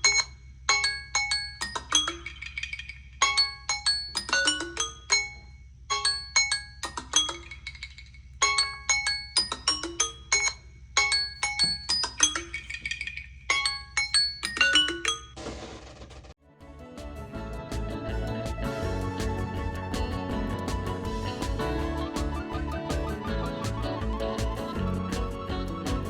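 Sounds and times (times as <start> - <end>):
bell-like phone ringtone melody: 0.0 - 2.6, 3.2 - 7.7, 8.4 - 12.7, 13.5 - 15.4.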